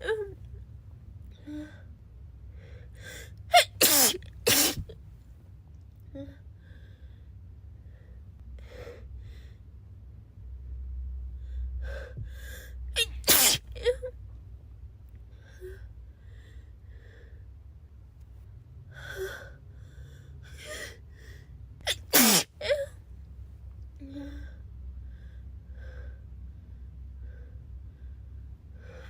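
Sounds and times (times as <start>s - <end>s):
girl sneezing: 3.5s - 4.9s, 13.0s - 13.9s, 21.9s - 22.9s.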